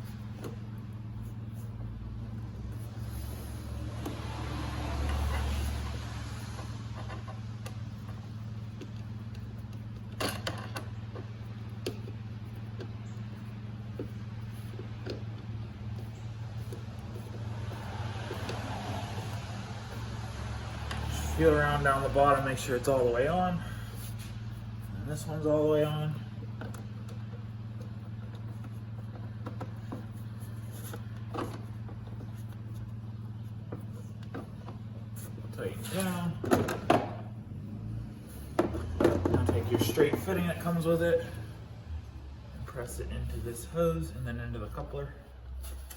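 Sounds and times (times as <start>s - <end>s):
light knocks and rubs: 0.0s - 37.3s, 38.1s - 40.8s
steady low hum: 0.0s - 45.9s
rubber coupler creaks and knocks: 36.4s - 37.3s, 38.5s - 40.3s.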